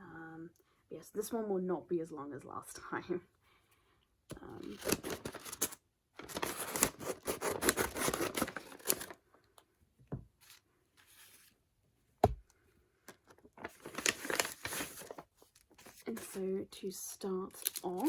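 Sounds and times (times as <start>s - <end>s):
package wrapping tearing and crinkling: 4.6s - 9.2s, 13.5s - 15.8s, 17.5s - 18.0s.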